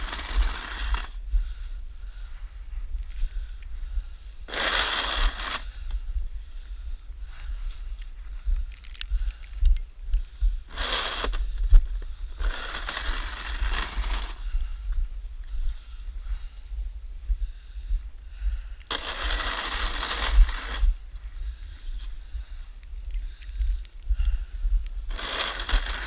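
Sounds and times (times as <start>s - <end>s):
snow shovel scraping snow: 0.0s - 1.1s, 4.5s - 5.8s, 10.7s - 11.6s, 12.4s - 14.4s, 18.9s - 20.9s, 25.1s - 26.0s
steady low rumble: 0.0s - 26.0s.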